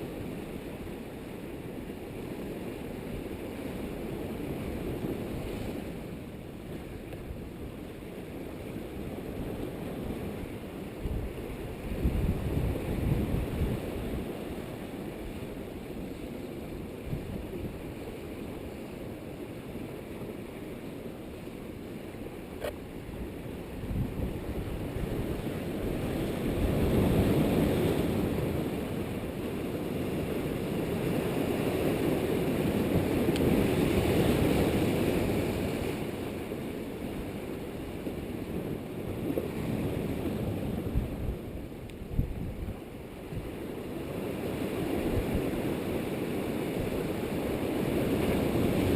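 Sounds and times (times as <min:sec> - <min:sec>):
wind buffeting microphone: 0:09.1 - 0:14.4, 0:22.6 - 0:29.1, 0:39.1 - 0:45.8.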